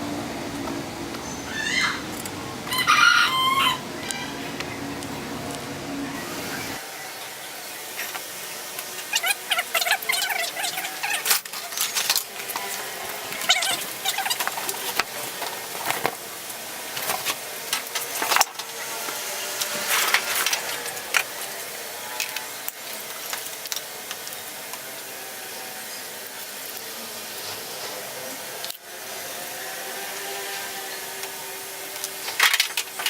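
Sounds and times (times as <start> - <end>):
steady hiss: 2.1 - 33.0
clicks and knocks of small parts: 8.1 - 12.8, 31.2 - 33.0.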